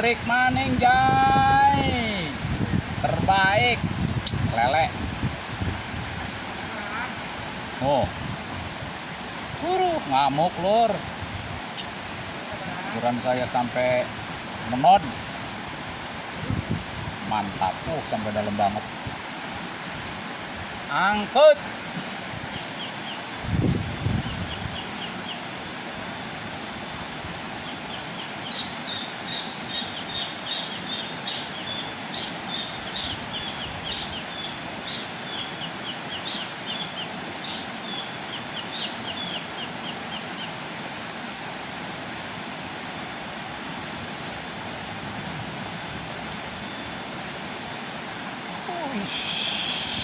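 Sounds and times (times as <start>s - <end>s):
outdoor background noise: 0.0s - 50.0s
bird chirping: 27.6s - 40.6s.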